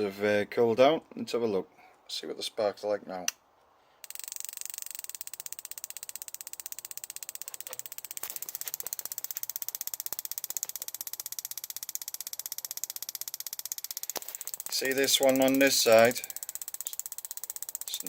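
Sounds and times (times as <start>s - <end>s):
spark ticking: 4.0s - 18.0s.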